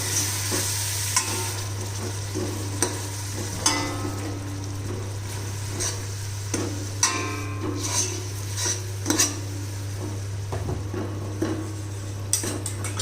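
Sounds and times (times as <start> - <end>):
steady low hum: 0.0 - 13.0
metal spoon scraping a pan: 5.7 - 6.1, 7.0 - 9.5.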